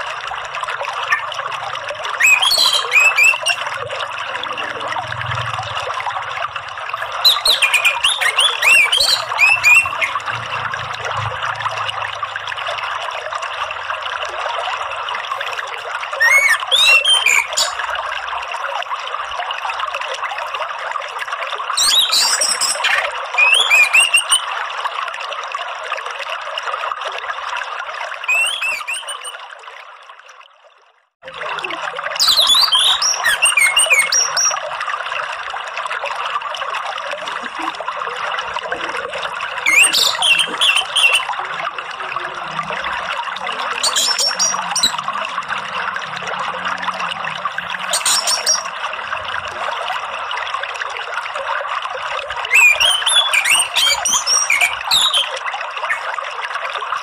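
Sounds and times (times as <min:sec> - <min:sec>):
water trickling: 0:00.0 - 0:57.0
songbird chirps and whistles: 0:02.2 - 0:03.6, 0:07.1 - 0:10.3, 0:16.2 - 0:17.9, 0:21.8 - 0:24.5, 0:28.3 - 0:29.4, 0:32.2 - 0:34.6, 0:39.6 - 0:41.4, 0:43.8 - 0:45.0, 0:47.8 - 0:48.7, 0:52.5 - 0:56.1.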